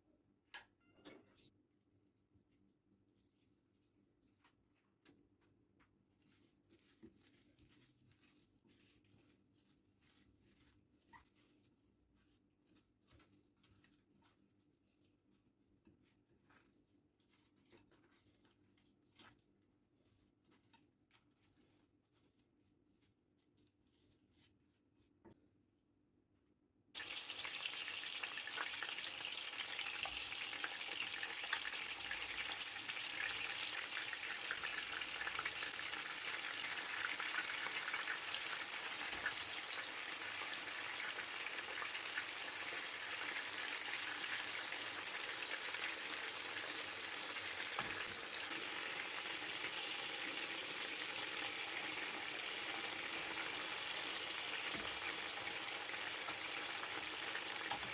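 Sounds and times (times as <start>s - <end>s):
food sizzling in hot oil: 27.0s - 57.9s.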